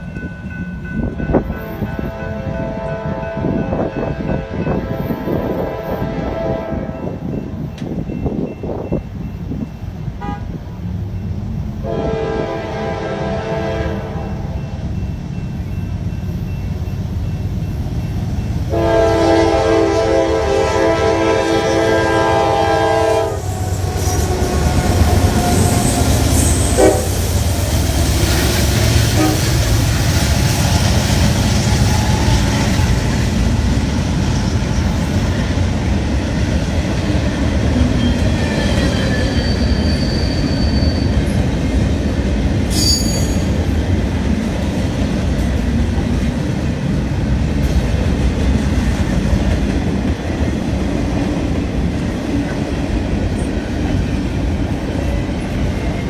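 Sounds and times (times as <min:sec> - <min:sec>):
train rumbling past: 0:00.0 - 0:56.0
high wheel squeal: 0:23.3 - 0:27.6, 0:37.9 - 0:41.4, 0:42.7 - 0:43.6.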